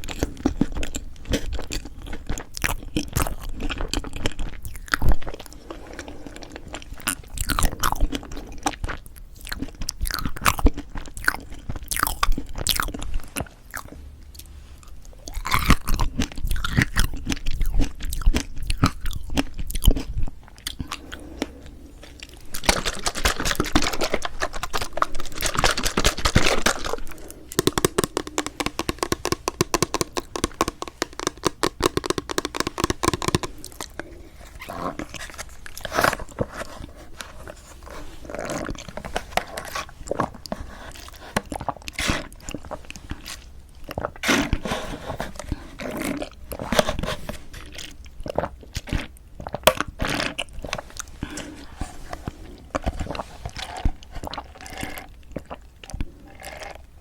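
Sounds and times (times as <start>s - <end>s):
chewing and wet mouth sounds: 0.0s - 57.0s
mouth clicks and smacks: 22.2s - 36.2s.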